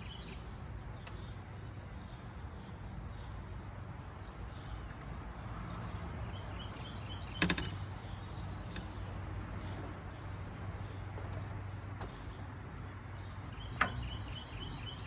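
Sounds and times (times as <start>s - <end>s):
faint bird chirps: 13.4s - 15.0s.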